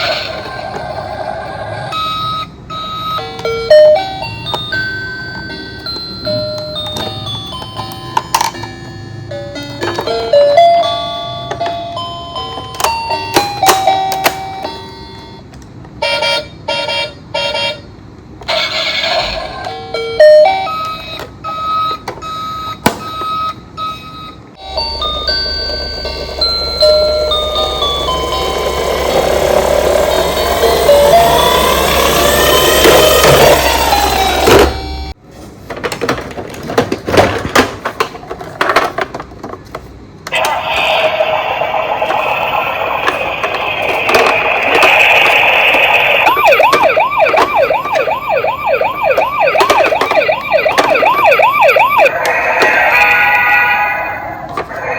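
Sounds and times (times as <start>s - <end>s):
toy siren beeping tones and jingles: 0.0s - 8.6s, 16.0s - 35.1s, 42.0s - 54.9s
plastic toys clicking and knocking: 5.8s - 8.8s, 9.6s - 10.5s, 11.3s - 16.0s, 35.6s - 40.6s, 42.0s - 51.2s.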